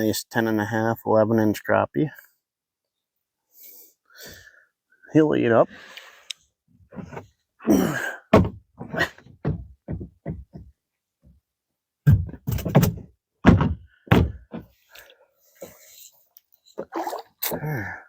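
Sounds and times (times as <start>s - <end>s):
thunks and knocks against kayak: 8.3s - 10.7s, 12.1s - 14.7s.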